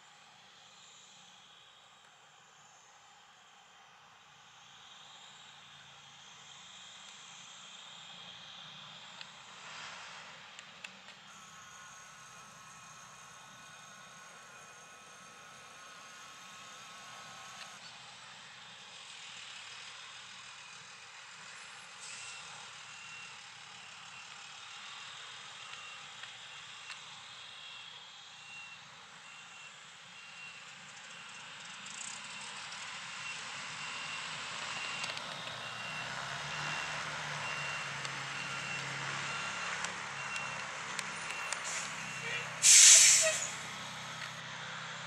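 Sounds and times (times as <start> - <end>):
reversing alarm beeping: 22.1 - 43.7
aircraft and ramp noise hiss: 40.6 - 44.3.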